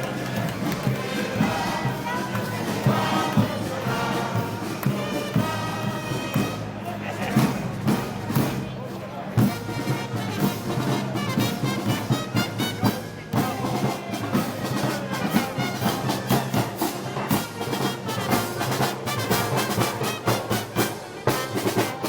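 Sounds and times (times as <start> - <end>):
brass band with drums: 0.0 - 22.0.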